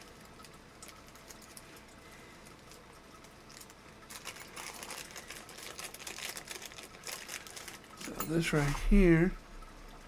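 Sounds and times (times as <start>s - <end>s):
small parts and packaging rustling: 0.0s - 8.9s.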